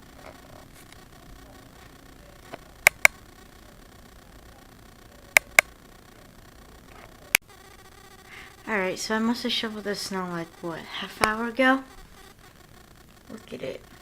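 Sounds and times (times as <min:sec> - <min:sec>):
sharp double clicks: 0:02.4 - 0:03.4, 0:05.3 - 0:05.8.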